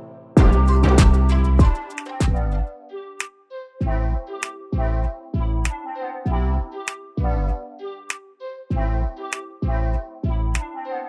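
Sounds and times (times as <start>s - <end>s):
held chords: 0.0s - 3.2s
sliding bass notes: 0.4s - 2.7s, 3.8s - 7.6s, 8.7s - 10.7s.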